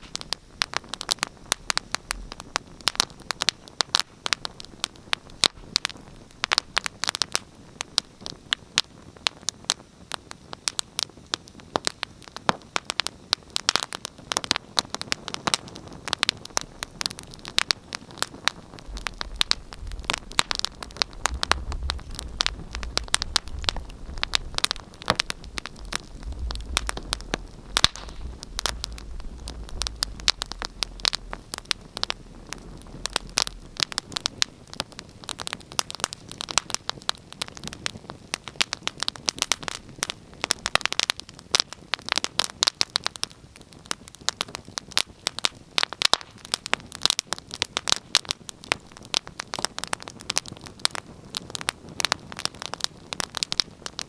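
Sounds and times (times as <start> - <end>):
wood fire crackling and popping: 0.0 - 54.0
low rumble: 18.8 - 34.7.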